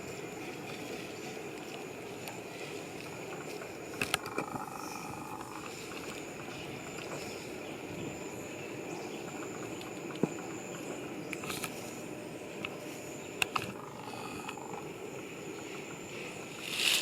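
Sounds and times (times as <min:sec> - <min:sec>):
small ticks: 0:01.5 - 0:07.5, 0:13.4 - 0:15.9
high insect buzz: 0:12.8 - 0:17.0.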